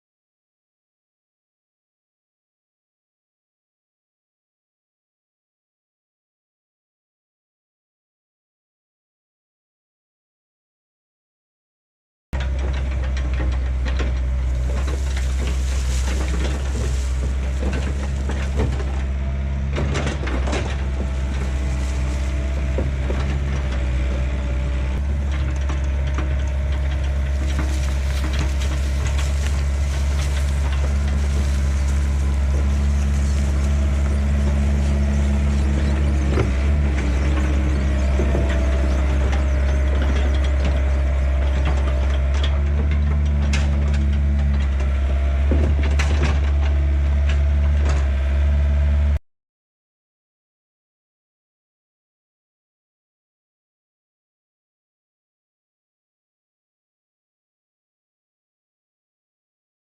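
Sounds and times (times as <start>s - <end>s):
diesel engine running: 12.4s - 49.2s.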